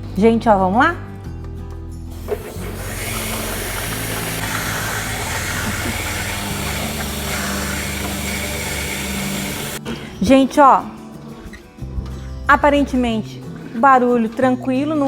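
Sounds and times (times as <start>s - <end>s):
washing machine running: 2.2s - 9.8s.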